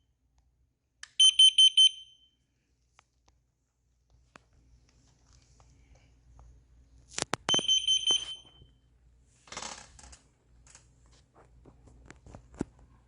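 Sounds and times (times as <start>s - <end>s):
high-pitched electronic beep: 7.5s - 8.6s.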